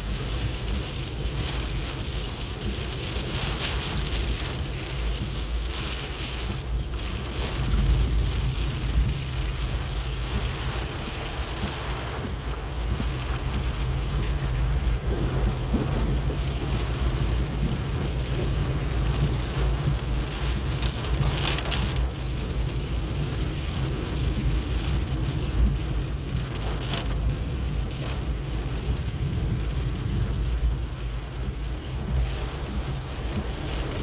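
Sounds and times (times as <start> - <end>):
steady rain hissing: 0.0 - 34.0.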